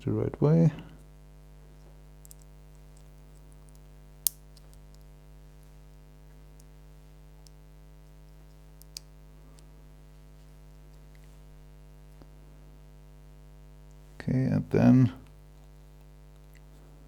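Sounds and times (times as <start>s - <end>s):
steady electrical hum: 0.0s - 17.0s.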